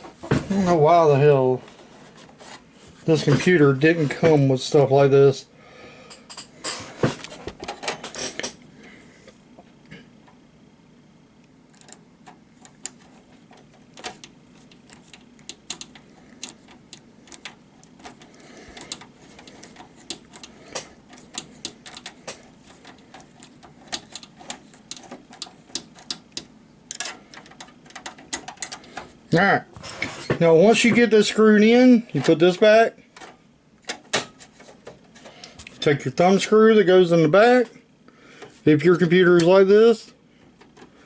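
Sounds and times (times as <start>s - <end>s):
screwdriver clicking on metal: 11.7s - 28.9s.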